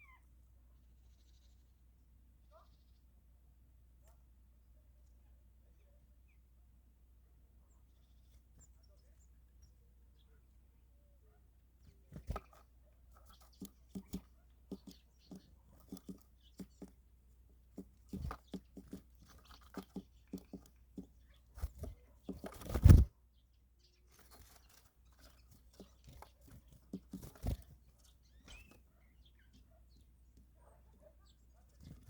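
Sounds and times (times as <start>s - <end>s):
poultry pecking feed: 12.0s - 23.1s, 24.2s - 32.0s.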